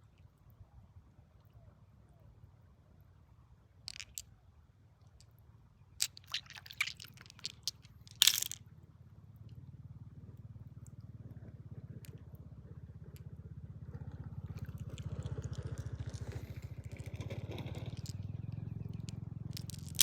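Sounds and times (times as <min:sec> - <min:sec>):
sharp crunches and scrapes: 0:06.0 - 0:08.6, 0:19.0 - 0:20.0
low motor hum: 0:09.0 - 0:20.0.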